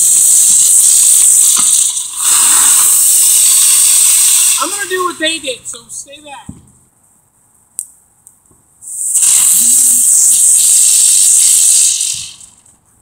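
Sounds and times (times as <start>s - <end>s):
spinner firework hissing: 0.0s - 6.3s, 8.8s - 12.7s.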